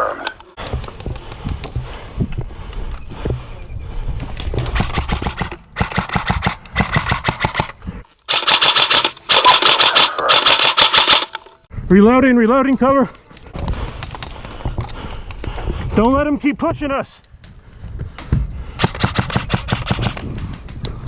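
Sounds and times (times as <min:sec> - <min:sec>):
airsoft guns firing bursts: 0:04.8 - 0:07.7, 0:08.3 - 0:11.4, 0:18.8 - 0:20.2.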